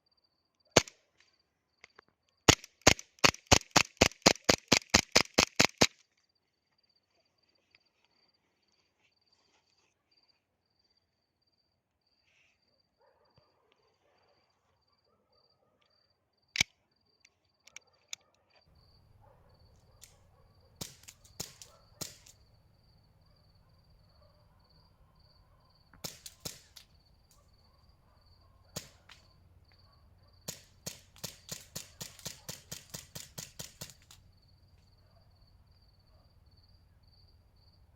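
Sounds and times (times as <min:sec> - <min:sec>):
cricket chirping: 0:00.0 - 0:37.9
airsoft pistol shots: 0:02.5 - 0:05.9, 0:20.8 - 0:22.4, 0:26.0 - 0:26.8, 0:28.7 - 0:29.2.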